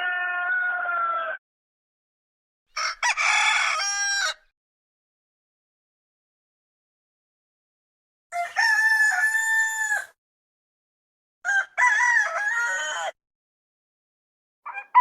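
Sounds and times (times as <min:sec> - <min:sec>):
rooster crowing: 0:00.0 - 0:01.4, 0:02.8 - 0:04.5, 0:08.3 - 0:10.2, 0:11.4 - 0:13.2, 0:14.7 - 0:15.0.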